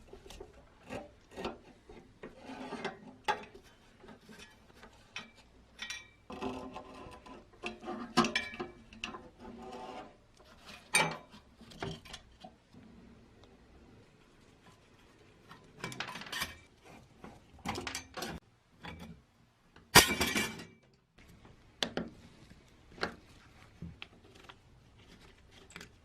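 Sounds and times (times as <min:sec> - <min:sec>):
tools scraping metal: 0:00.1 - 0:12.3.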